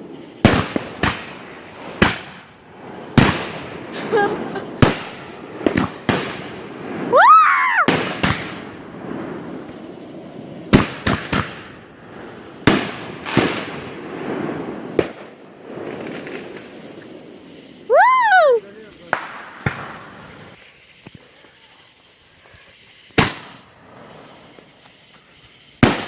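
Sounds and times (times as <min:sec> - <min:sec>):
firework whistle: 0:00.0 - 0:26.0
fireworks bangs and pops: 0:00.0 - 0:26.0.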